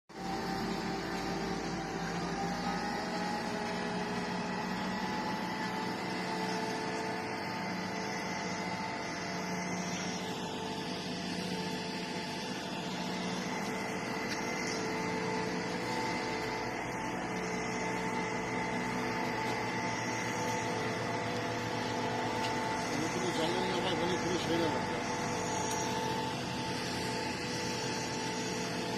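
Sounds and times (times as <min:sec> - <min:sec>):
heavy machinery droning: 0:00.1 - 0:28.9
machinery whining tones: 0:00.1 - 0:28.9.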